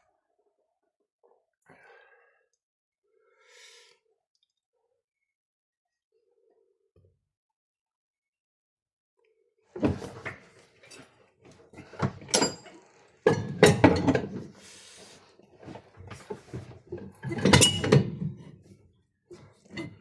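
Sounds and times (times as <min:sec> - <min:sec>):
hard objects knocking and rattling: 0:13.3 - 0:14.5.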